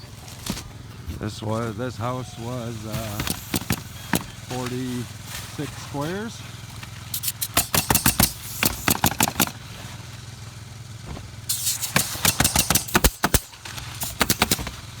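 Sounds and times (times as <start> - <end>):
pneumatic nailers firing: 2.8 - 5.2, 6.8 - 10.0, 11.3 - 15.0.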